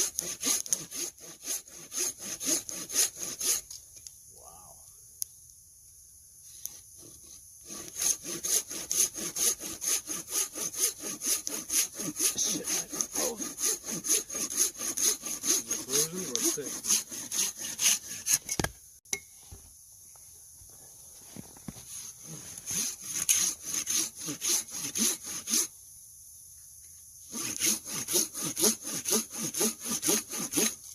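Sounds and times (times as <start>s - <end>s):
hand saw cutting wood: 0.0s - 3.8s, 6.6s - 18.7s, 21.8s - 25.7s, 27.3s - 30.9s.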